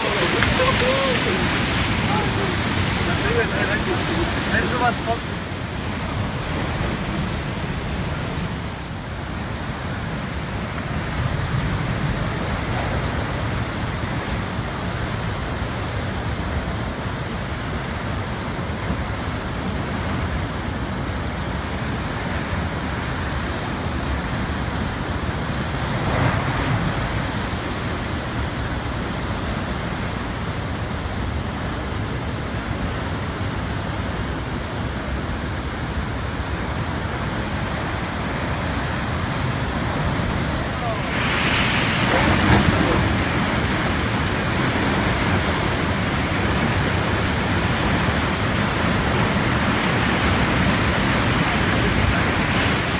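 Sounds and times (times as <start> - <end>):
wave crashing: 0.0 - 5.7, 40.6 - 52.9
heavy surf rumbling: 0.0 - 6.0, 40.5 - 52.9.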